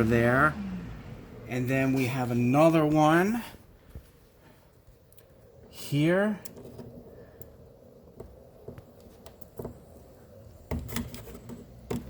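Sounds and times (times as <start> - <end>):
clicks and taps on plastic panel: 10.7 - 12.0.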